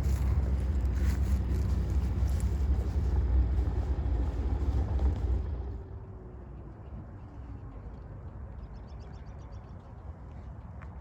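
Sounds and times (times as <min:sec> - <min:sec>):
car engine rumbling: 0:00.0 - 0:08.6.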